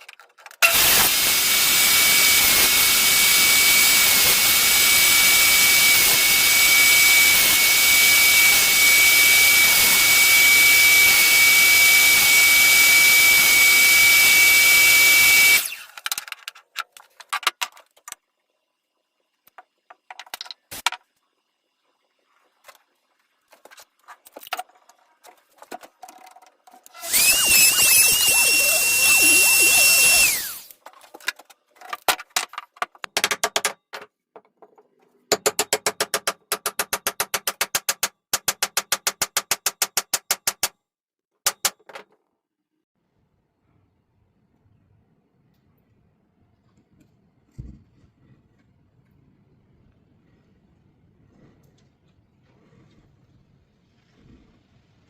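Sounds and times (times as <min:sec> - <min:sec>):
electric power tool cutting wood: 0:00.6 - 0:16.0, 0:26.9 - 0:30.8.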